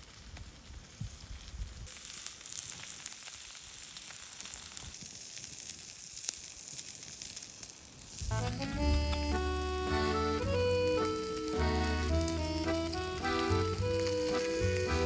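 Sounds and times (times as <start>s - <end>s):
food sizzling in a pan: 0.9s - 8.5s, 13.5s - 15.0s.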